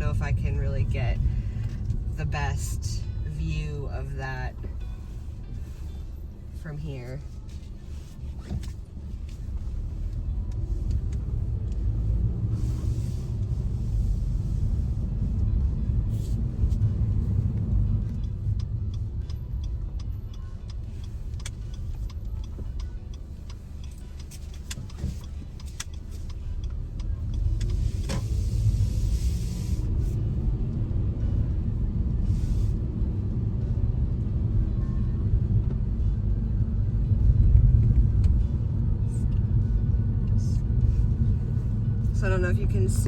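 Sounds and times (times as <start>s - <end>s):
car road noise rumble: 0.0s - 43.0s.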